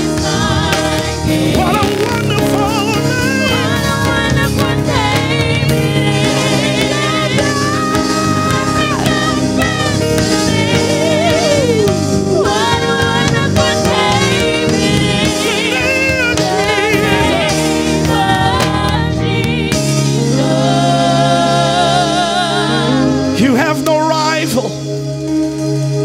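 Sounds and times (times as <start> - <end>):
voices singing with vibrato: 0.0 - 24.6
gospel band playing: 0.0 - 26.0.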